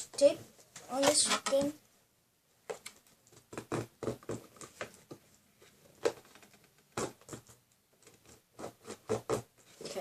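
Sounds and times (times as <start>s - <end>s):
taped box scratched by hand: 8.2s - 10.0s.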